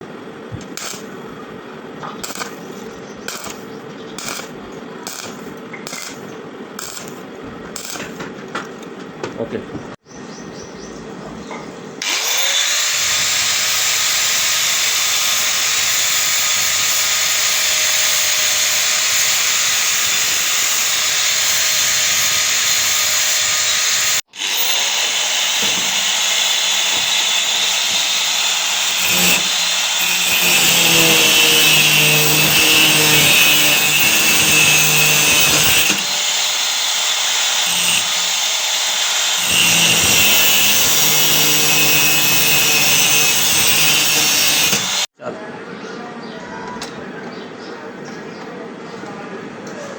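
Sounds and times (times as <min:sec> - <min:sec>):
angle grinder cutting metal: 0:00.8 - 0:01.2, 0:02.2 - 0:07.2, 0:07.8 - 0:08.2, 0:12.0 - 0:45.1.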